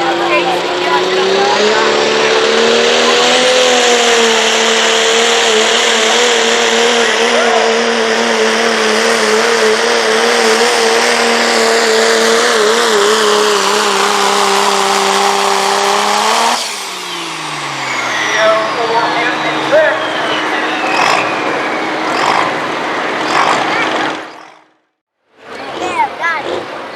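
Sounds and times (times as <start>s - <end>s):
diesel truck engine at high revs: 0.0s - 26.9s
high turbo whistle: 13.0s - 23.2s.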